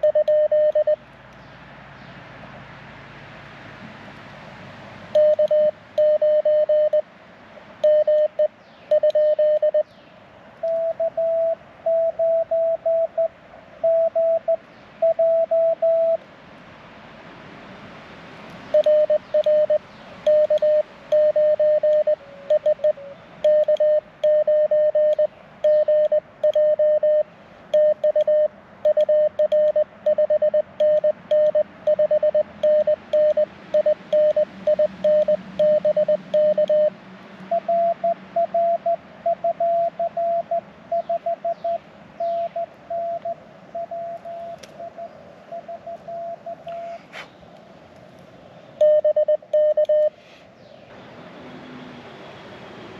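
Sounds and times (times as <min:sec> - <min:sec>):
morse code tone beeping: 0:00.0 - 0:01.0, 0:05.1 - 0:07.0, 0:07.8 - 0:09.9, 0:10.6 - 0:16.2, 0:18.7 - 0:36.9, 0:37.5 - 0:46.9, 0:48.8 - 0:50.2.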